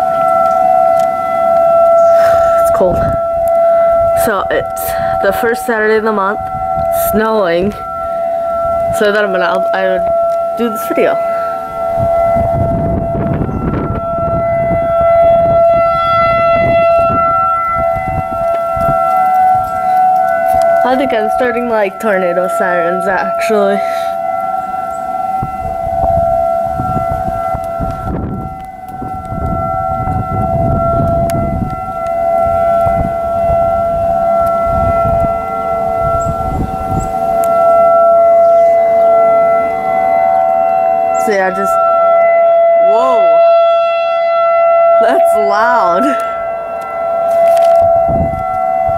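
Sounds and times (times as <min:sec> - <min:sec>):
warning siren steady tone: 0:00.0 - 0:48.9
low rumble on microphone: 0:01.5 - 0:23.6, 0:25.3 - 0:40.3, 0:47.2 - 0:48.9.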